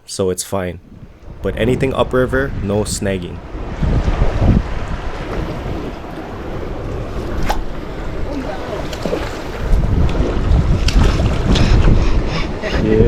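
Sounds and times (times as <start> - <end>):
wind buffeting microphone: 0.8 - 13.0.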